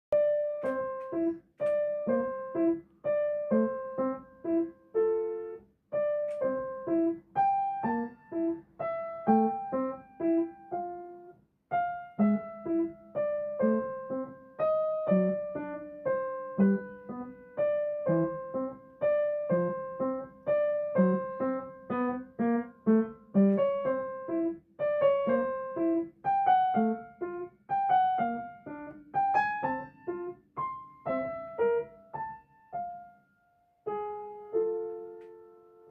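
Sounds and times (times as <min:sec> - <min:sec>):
gentle piano melody: 0:00.1 - 0:35.9.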